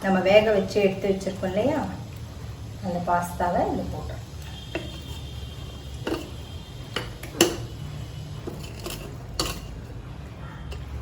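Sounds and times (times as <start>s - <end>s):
spoon knocking against a pan: 6.0s - 7.7s.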